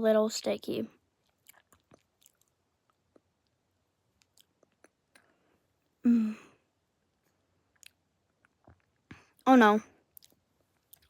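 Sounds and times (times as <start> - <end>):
sticky mouth clicks eating: 1.2 - 3.6, 4.2 - 5.3, 7.7 - 9.0, 10.1 - 11.0
short vocal reaction: 6.0 - 6.6.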